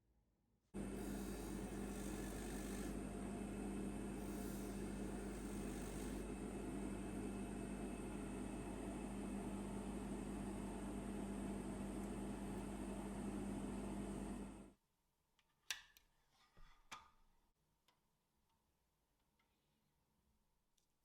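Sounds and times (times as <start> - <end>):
polishing machine motor humming: 0.8 - 14.6.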